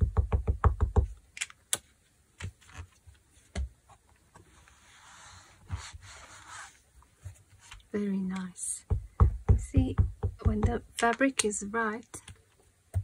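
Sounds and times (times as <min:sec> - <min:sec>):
soft rustle: 0:01.9 - 0:08.6
rubber stamp tapping ink pad: 0:08.9 - 0:11.5.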